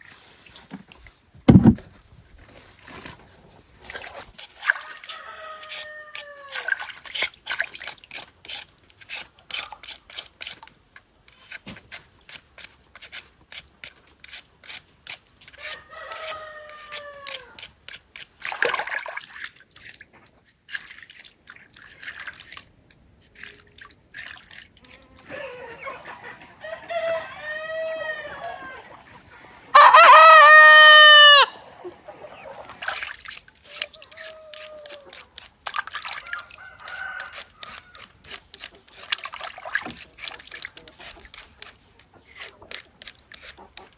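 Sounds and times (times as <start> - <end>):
roosters crowing: 4.8 - 6.6, 15.7 - 17.6, 25.2 - 29.0, 29.7 - 31.8, 36.2 - 38.1.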